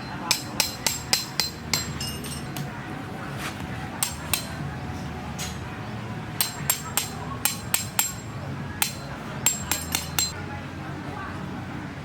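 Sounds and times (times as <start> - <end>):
hammer striking metal: 0.0 - 2.8, 4.0 - 4.6, 6.4 - 10.4.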